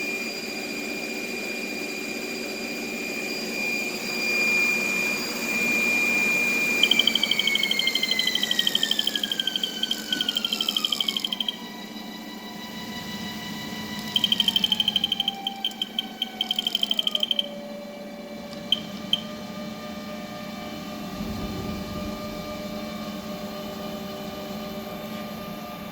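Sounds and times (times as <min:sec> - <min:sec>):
lathe machine whine: 0:04.9 - 0:17.6
rapid electronic beeping: 0:06.7 - 0:11.6, 0:14.0 - 0:17.5, 0:18.6 - 0:19.3.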